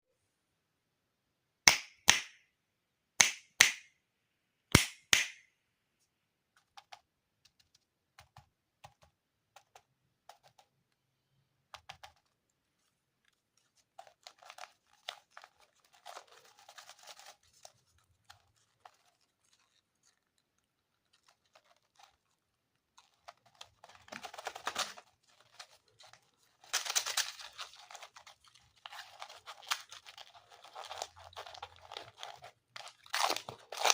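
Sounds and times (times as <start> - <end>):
candy packaging crinkling: 12.0 - 33.9.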